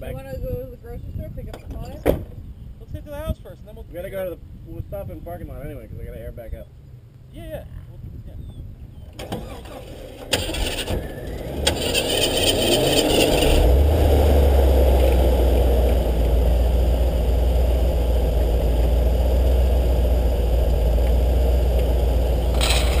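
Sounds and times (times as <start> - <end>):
truck engine rumbling: 9.0 - 23.0.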